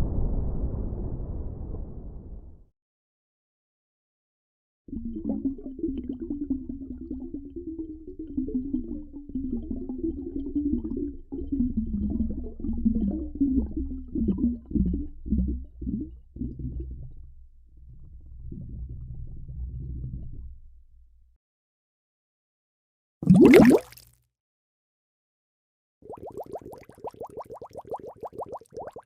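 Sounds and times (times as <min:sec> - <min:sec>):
underwater bubbling and gurgling: 0:04.9 - 0:21.0, 0:23.2 - 0:23.9, 0:26.1 - 0:29.0.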